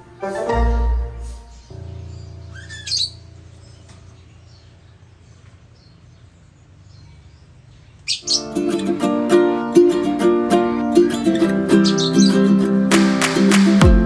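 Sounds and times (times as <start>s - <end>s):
parrots chirping: 0.0s - 5.0s, 7.7s - 9.0s, 11.3s - 12.6s.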